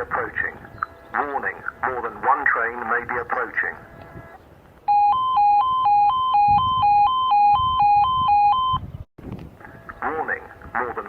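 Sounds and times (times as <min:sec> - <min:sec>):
two-tone alarm sounder: 0:03.8 - 0:08.9.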